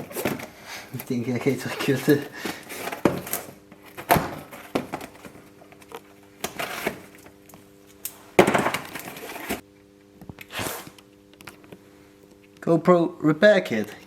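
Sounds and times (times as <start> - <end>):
packaging crackling and rustling: 0.0 - 7.5
faint steady hum: 0.0 - 14.0.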